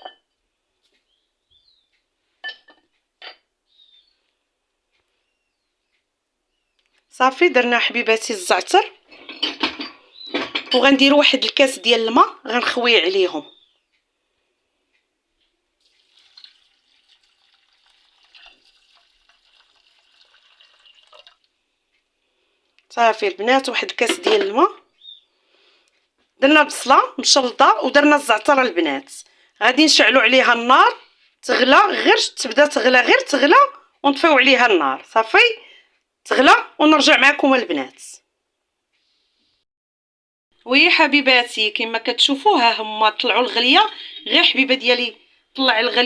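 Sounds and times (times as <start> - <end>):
faint bird chirps: 1.0 - 2.1, 3.6 - 4.3, 5.1 - 6.9, 13.4 - 14.1, 24.9 - 25.4
water pouring into saucepan: 15.8 - 21.5.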